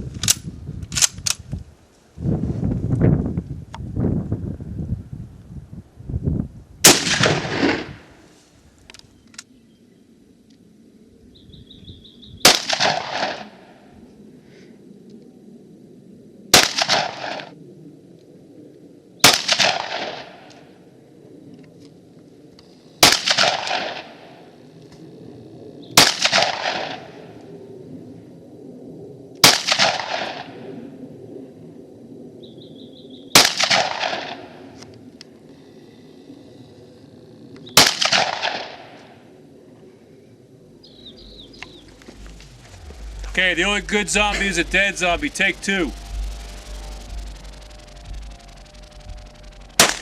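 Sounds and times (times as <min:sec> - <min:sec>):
rifle shots with echo: 0:06.8 - 0:08.0, 0:12.4 - 0:13.6, 0:29.4 - 0:30.5, 0:33.4 - 0:34.4, 0:37.8 - 0:39.0, 0:49.8 - 0:50.0.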